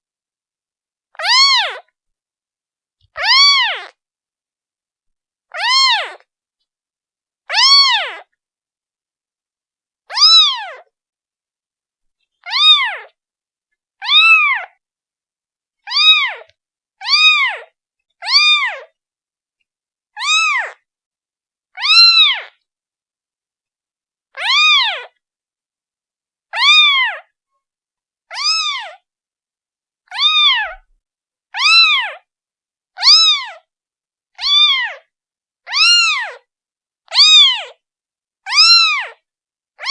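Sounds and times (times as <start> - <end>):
kitten meowing: 1.2 - 1.8, 3.2 - 3.9, 5.5 - 6.2, 7.5 - 8.3, 10.1 - 10.9, 12.4 - 13.1, 14.0 - 14.8, 15.9 - 18.9, 20.2 - 20.8, 21.8 - 22.6, 24.4 - 25.1, 26.5 - 27.3, 28.3 - 29.0, 30.1 - 30.9, 31.6 - 32.2, 33.0 - 33.7, 34.4 - 35.0, 35.7 - 36.5, 37.1 - 37.8, 38.5 - 39.2.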